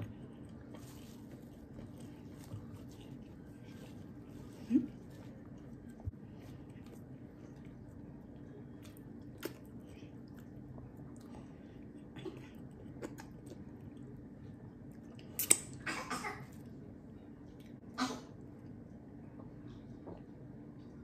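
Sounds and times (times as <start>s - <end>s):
low hum: 0.0s - 15.3s
person chewing food: 0.0s - 15.8s
wet mouth clicks and smacks: 8.9s - 9.7s, 15.1s - 15.8s.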